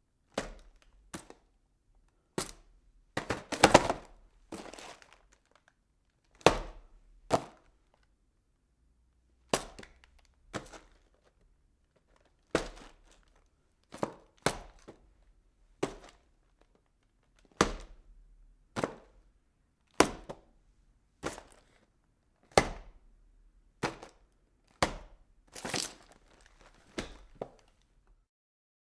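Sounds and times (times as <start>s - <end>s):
boxes knocking and thudding: 3.2s - 5.0s.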